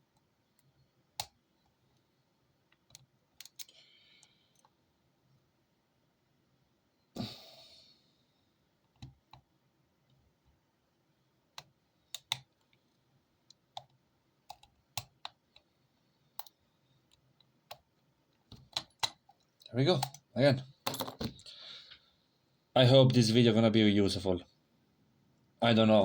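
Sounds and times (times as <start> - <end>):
lock pick clicking on padlock pins: 2.9 - 3.7.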